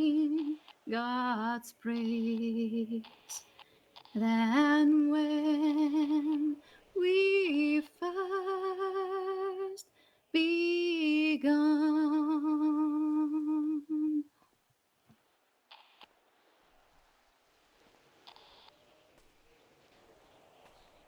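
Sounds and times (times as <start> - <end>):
woman singing hymn unaccompanied: 0.0 - 3.4, 4.1 - 14.3.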